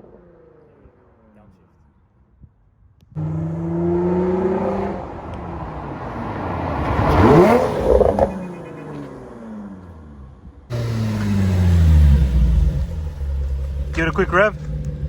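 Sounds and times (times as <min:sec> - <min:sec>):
car engine at full throttle: 0:03.0 - 0:15.0.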